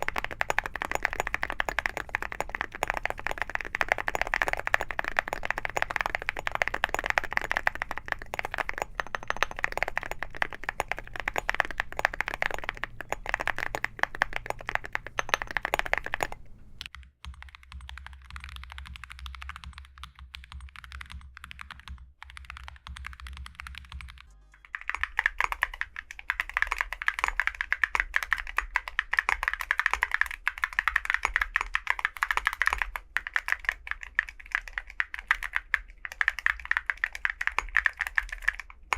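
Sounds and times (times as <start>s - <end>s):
low steady hum: 0.0s - 16.9s
mechanical keyboard typing: 0.0s - 38.9s.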